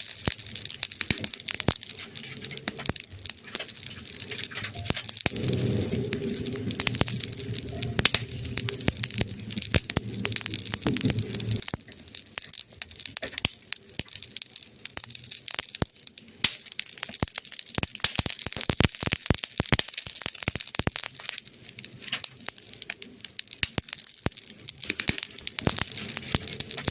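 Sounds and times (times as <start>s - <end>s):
wood fire crackling and popping: 0.0s - 26.9s
low steady hum: 4.3s - 12.1s.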